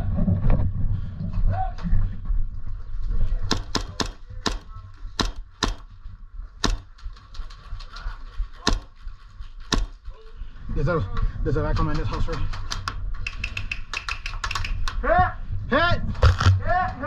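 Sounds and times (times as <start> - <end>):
airsoft gun shots: 3.5 - 6.0, 6.6 - 7.0, 8.7 - 9.0, 9.7 - 10.1.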